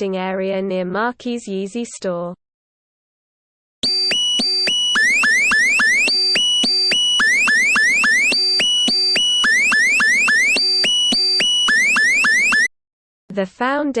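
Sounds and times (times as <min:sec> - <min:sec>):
high electronic beeps: 0:03.8 - 0:12.7
upward-sweeping electronic chirps: 0:03.8 - 0:12.7.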